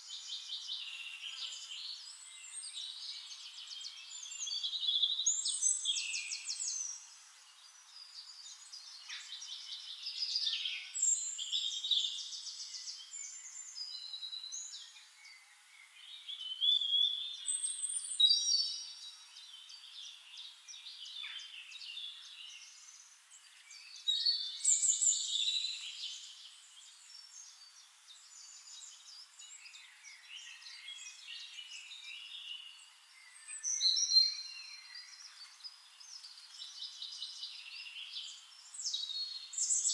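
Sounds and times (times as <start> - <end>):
songbirds singing and calling: 0.0 - 39.9.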